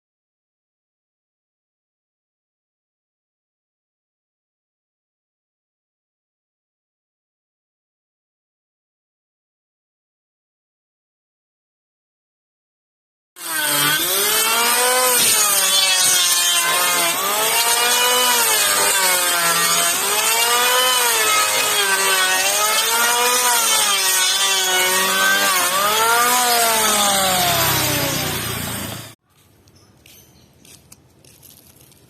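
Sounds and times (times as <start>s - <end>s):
electric hand planer cutting wood: 13.4s - 29.2s.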